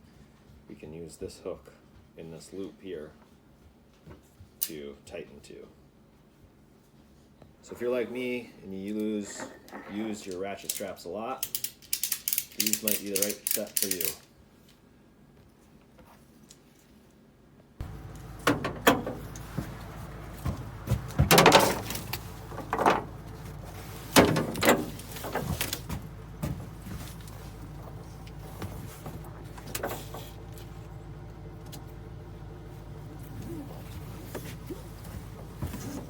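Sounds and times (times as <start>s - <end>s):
knocks and clicks: 17.8s - 30.7s
steady low hum: 17.8s - 36.0s.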